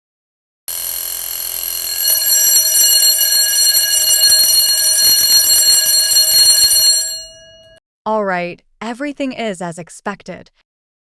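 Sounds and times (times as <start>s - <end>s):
electric alarm bell ringing: 0.7s - 7.8s.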